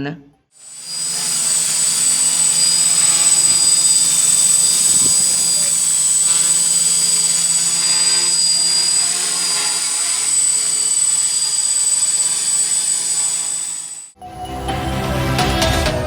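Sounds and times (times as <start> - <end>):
drone motors whining: 0.6 - 14.2
music: 14.2 - 16.0.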